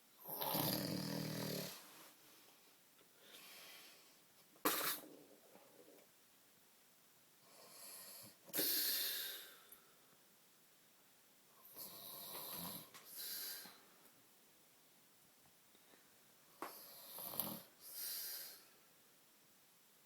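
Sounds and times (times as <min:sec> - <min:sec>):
man snoring: 0:00.2 - 0:01.8, 0:16.8 - 0:17.7.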